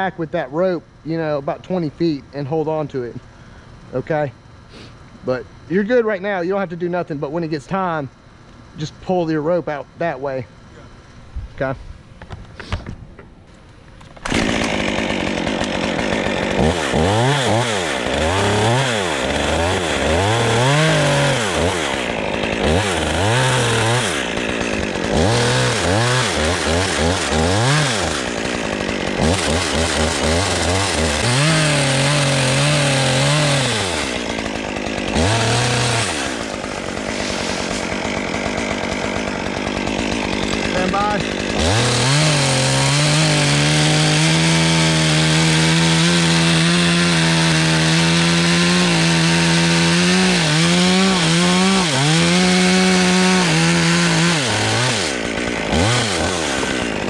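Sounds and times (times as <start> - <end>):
chainsaw revving: 14.2 - 57.0.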